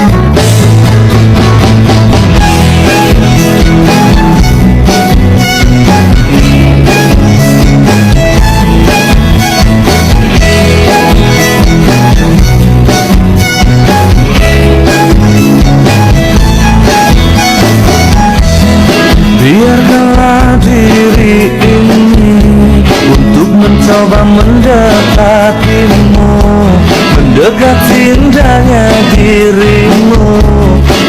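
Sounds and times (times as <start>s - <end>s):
instrumental band music: 0.0s - 31.0s.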